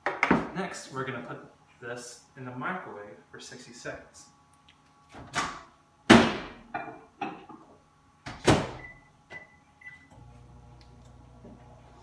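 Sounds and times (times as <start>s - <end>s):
microwave humming: 5.3s - 12.0s.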